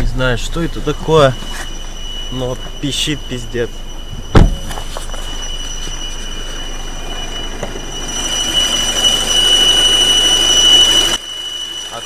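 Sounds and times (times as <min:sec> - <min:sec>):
diesel engine running: 0:00.0 - 0:12.0
high-pitched whistle: 0:00.0 - 0:12.0.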